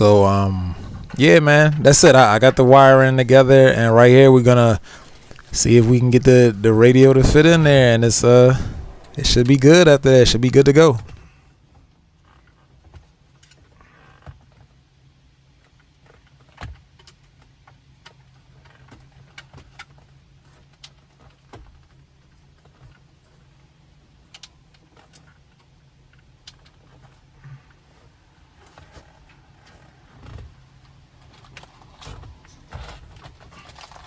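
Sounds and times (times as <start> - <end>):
low steady hum: 0.0 - 11.2.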